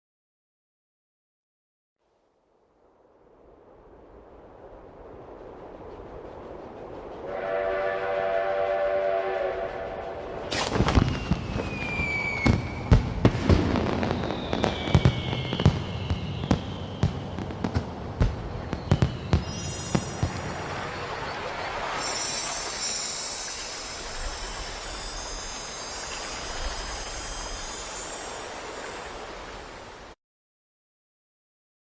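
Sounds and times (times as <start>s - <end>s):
wind rising: 2.2s - 30.2s
train rumbling: 4.0s - 30.1s
steam whistle: 7.2s - 12.9s
whistling rockets: 7.3s - 29.3s
fireworks bangs: 10.4s - 28.2s.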